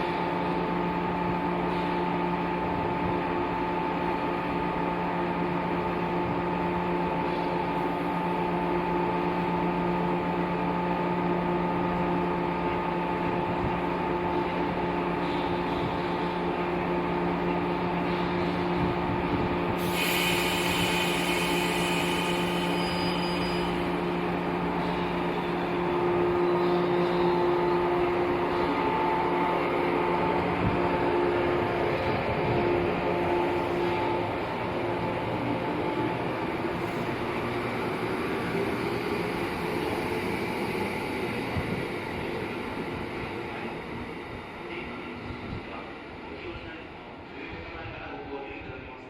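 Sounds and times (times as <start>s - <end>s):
multi-pitched train whine: 0.0s - 49.0s
hiss: 19.8s - 23.8s.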